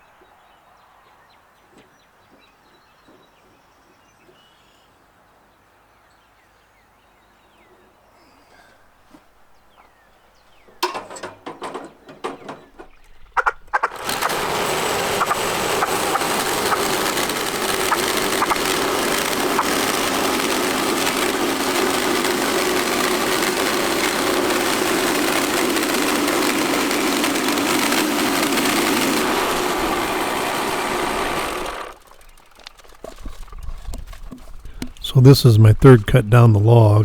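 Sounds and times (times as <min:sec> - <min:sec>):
knocks and rattles: 0:10.8 - 0:29.2, 0:31.3 - 0:35.0
sawmill engine running: 0:13.6 - 0:37.0.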